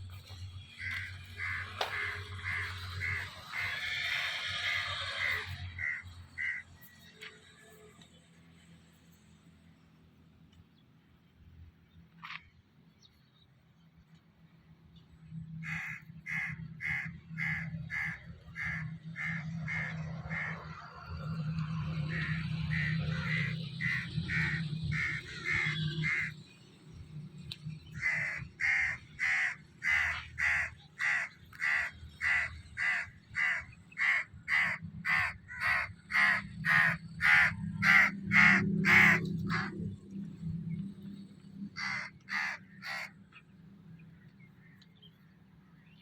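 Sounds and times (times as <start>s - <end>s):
crow cawing: 0.8s - 6.6s, 15.6s - 20.6s, 22.1s - 26.3s, 28.0s - 39.8s, 41.8s - 43.1s.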